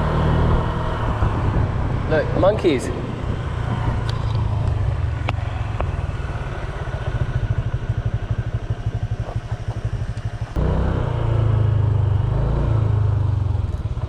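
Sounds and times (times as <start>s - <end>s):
motor scooter engine idling: 4.1s - 12.1s.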